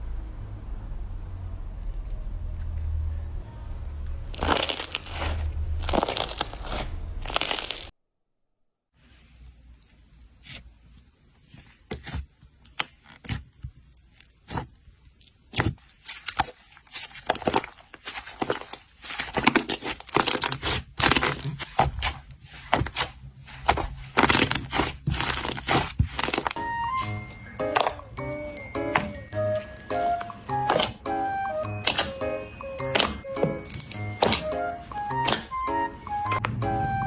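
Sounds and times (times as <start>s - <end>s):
slime crackling and popping: 4.3s - 7.9s, 10.0s - 28.0s, 30.1s - 31.1s, 31.7s - 35.6s
background music: 26.5s - 37.0s.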